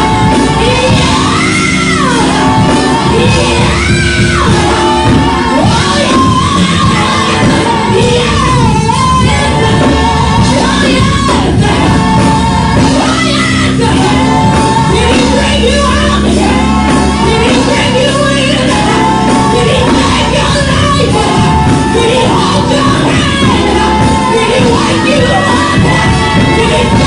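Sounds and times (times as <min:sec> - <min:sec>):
woman leading gospel singing: 0:00.0 - 0:27.0.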